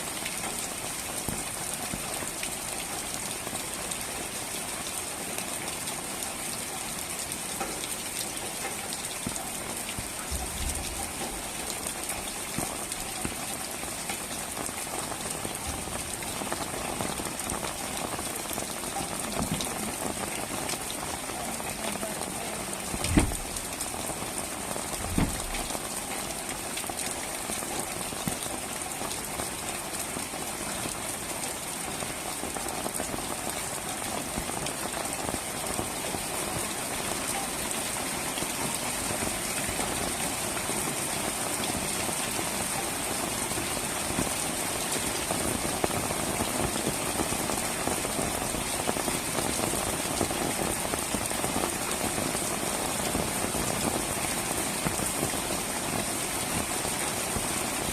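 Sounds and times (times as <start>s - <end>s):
pouring rain: 0.0s - 57.9s
dull thump: 23.0s - 23.5s, 25.1s - 25.6s.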